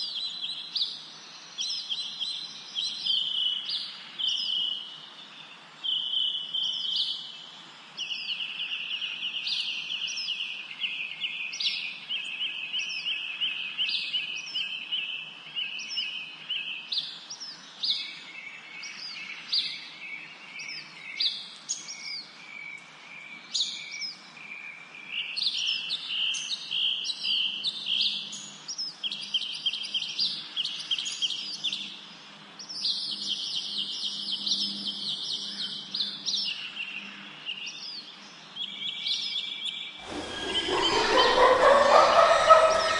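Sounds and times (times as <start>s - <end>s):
birds chirping and trilling: 25.3s - 42.9s.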